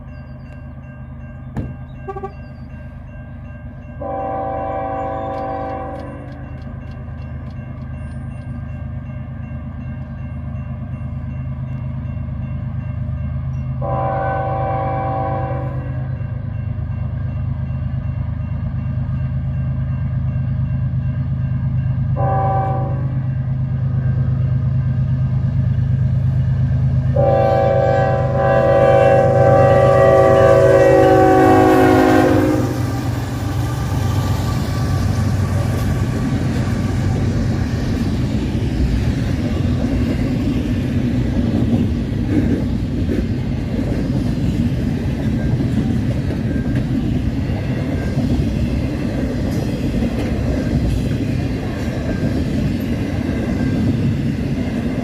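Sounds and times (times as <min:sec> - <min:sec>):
train cars rolling on rails: 0:00.0 - 0:55.0
locomotive horn chord: 0:02.0 - 0:02.5, 0:04.0 - 0:06.5, 0:13.8 - 0:16.2, 0:22.2 - 0:23.4, 0:27.1 - 0:33.1.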